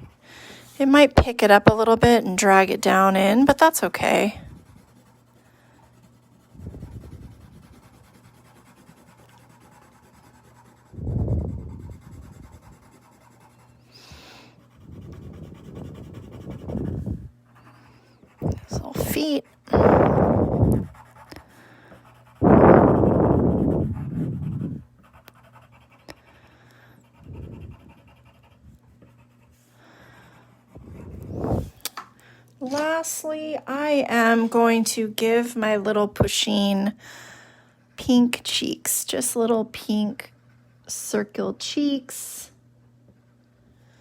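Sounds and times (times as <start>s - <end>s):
colouring tool rubbing on paper: 1.6s - 29.7s.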